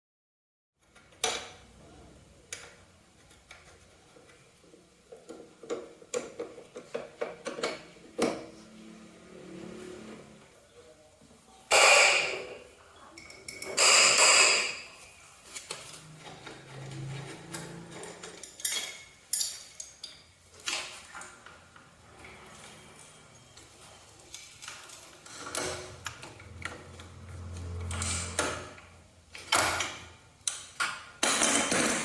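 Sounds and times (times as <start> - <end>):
tools clicking and knocking: 5.1 - 8.5, 13.2 - 15.0, 17.5 - 21.6, 24.3 - 32.0.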